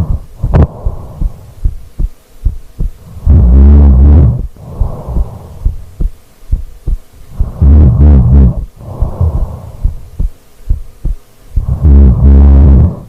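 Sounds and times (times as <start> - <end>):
soft airy breath: 0.0 - 3.3, 4.3 - 10.8
heartbeat thumping: 0.0 - 13.0
woman snoring: 3.0 - 5.7, 7.3 - 10.0, 11.6 - 13.0.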